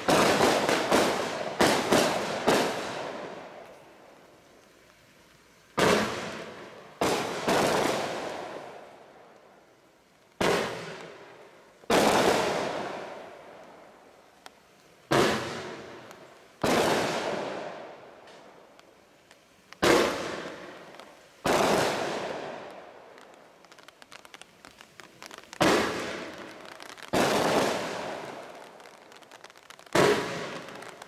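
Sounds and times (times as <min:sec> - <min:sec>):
firework crackling: 0:00.0 - 0:31.0
firework shell bursts: 0:15.1 - 0:18.5, 0:19.8 - 0:31.0.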